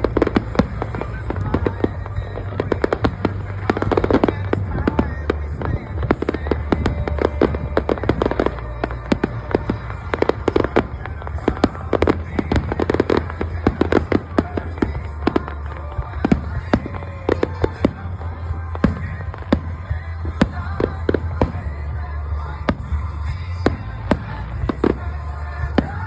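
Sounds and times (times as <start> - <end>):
fireworks bangs and crackling pops: 0.0 - 26.0.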